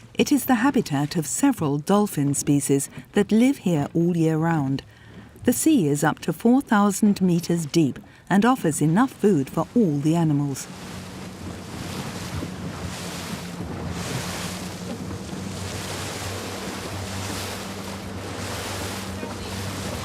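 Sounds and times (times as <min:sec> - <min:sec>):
boat motor droning: 0:00.0 - 0:20.0
sea water rushing and splashing: 0:07.3 - 0:20.0
wind buffeting microphone: 0:09.6 - 0:20.0.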